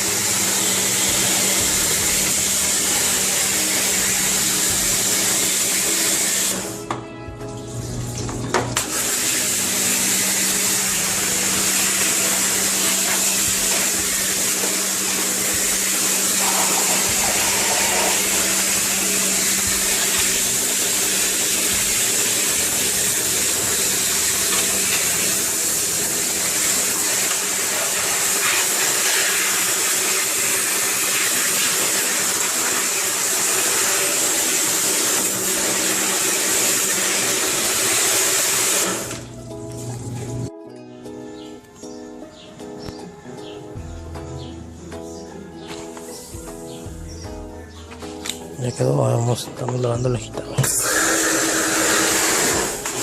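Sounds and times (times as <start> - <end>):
water jet spraying: 0.0 - 6.8, 8.7 - 39.3, 50.6 - 53.0.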